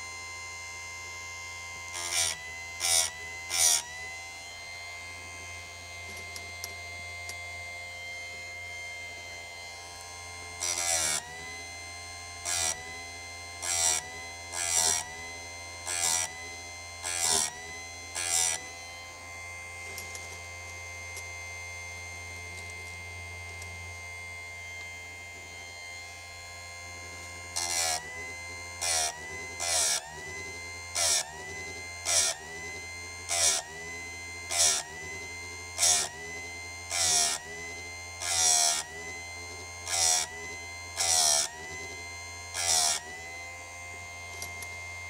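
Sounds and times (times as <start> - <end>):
sharpening machine motor whine: 0.0 - 45.0.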